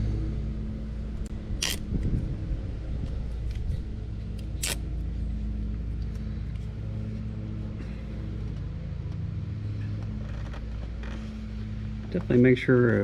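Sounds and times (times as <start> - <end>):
steady low hum: 0.0 - 13.0
tape backing peeling: 1.6 - 1.8, 4.4 - 4.8.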